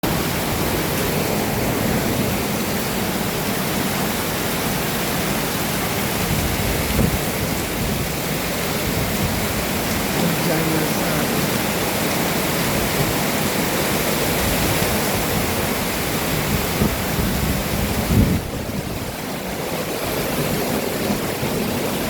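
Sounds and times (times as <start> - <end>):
heavy rain: 0.0 - 22.0.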